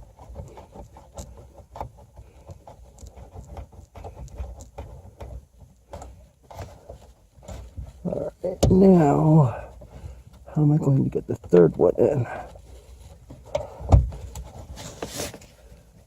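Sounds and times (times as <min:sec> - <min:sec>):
small clicks and taps of hands working: 0:00.0 - 0:08.0.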